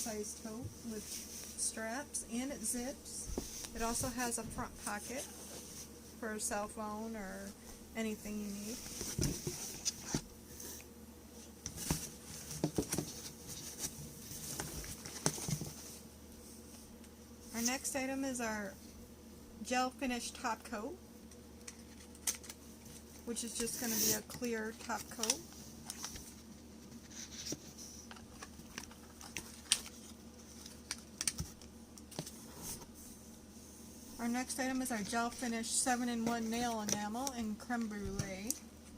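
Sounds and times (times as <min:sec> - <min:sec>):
packaging taps and rustles: 0:27.5 - 0:32.4.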